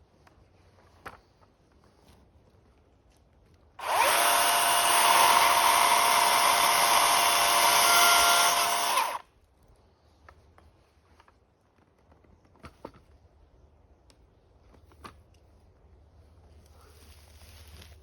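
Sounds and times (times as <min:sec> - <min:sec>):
electric power tool motor: 0:03.8 - 0:09.2.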